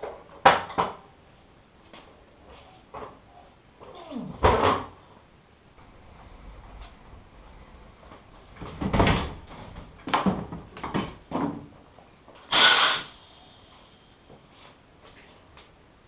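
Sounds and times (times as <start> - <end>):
loud rasping burst: 12.5 - 13.3.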